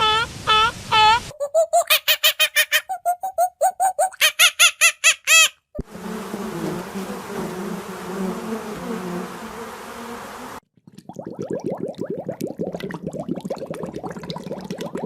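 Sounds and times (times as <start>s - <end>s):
bird calling rapidly: 0.0s - 5.6s
insects buzzing: 5.8s - 10.6s.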